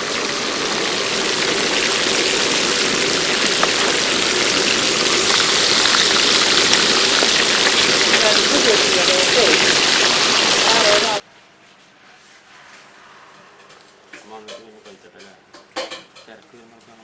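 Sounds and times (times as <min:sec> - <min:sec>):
fish sizzling in hot oil: 0:00.0 - 0:11.2.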